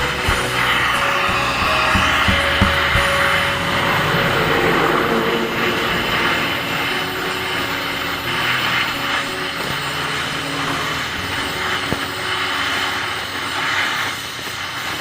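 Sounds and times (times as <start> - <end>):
welding arc hissing and buzzing: 0.0 - 15.0.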